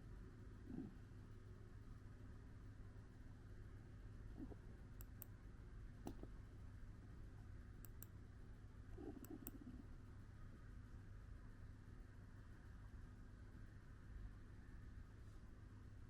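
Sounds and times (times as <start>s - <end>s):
cat snoring softly: 0.6s - 1.0s, 9.0s - 9.8s
faint clicks: 5.0s - 5.4s, 7.8s - 8.2s, 9.1s - 9.6s.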